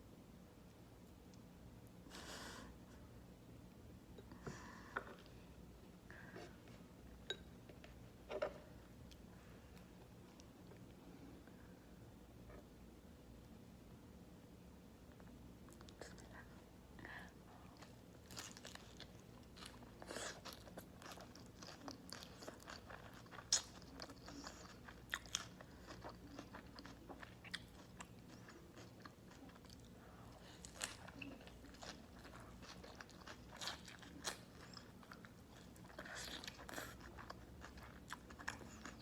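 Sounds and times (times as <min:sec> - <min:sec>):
chewing: 0:17.8 - 0:39.0.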